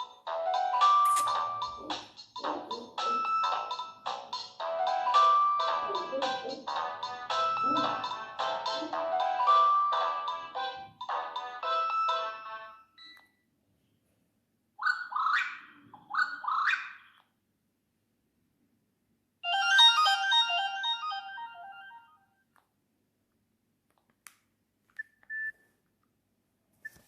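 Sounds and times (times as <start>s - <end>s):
phone ringtone electronic sweeps: 19.4s - 22.0s.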